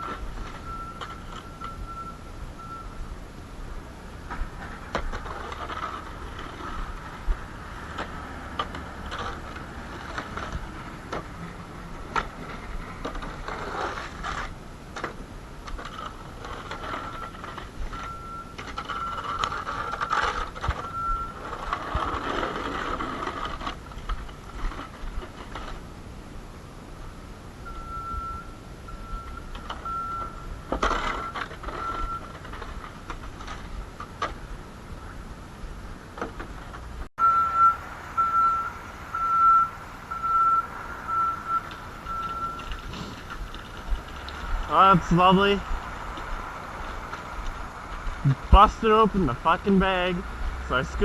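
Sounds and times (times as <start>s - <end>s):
electronic alarm beeping: 0.6s - 3.0s, 17.0s - 20.2s, 27.7s - 30.5s, 37.2s - 42.8s
scraping and crunching: 4.2s - 25.9s, 29.2s - 34.5s, 37.6s - 50.1s.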